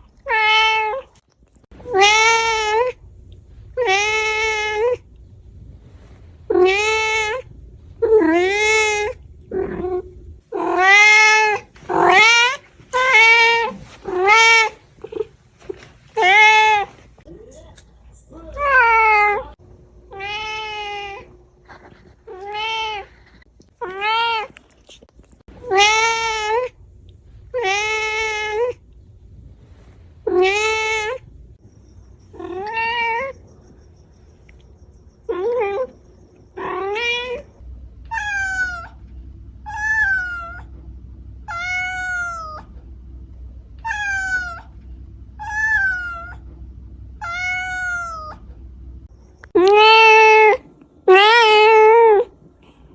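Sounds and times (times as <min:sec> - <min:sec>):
cat meowing: 0:01.8 - 0:03.0, 0:06.5 - 0:15.3, 0:38.1 - 0:39.0, 0:39.7 - 0:40.7, 0:41.5 - 0:42.7, 0:43.8 - 0:44.7, 0:45.4 - 0:46.4, 0:47.2 - 0:48.4, 0:49.6 - 0:52.3.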